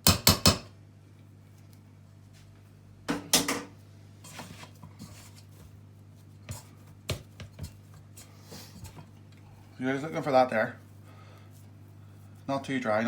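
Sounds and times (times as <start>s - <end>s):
low steady hum: 0.0s - 13.0s
dough scraping in a bowl: 4.2s - 9.2s.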